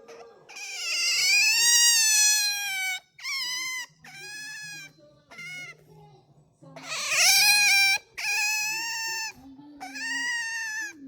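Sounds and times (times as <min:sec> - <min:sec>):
otter squealing: 0:00.0 - 0:05.8, 0:06.8 - 0:11.0.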